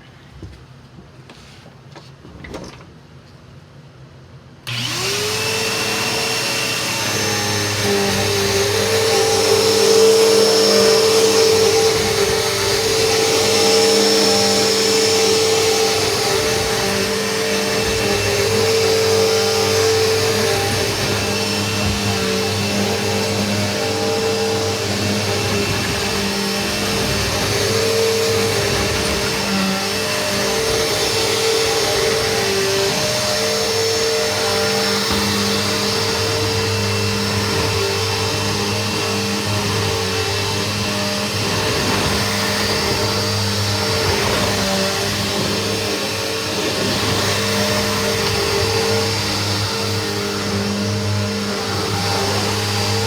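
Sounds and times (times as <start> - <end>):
vacuum cleaner motor whine: 4.6 - 53.0.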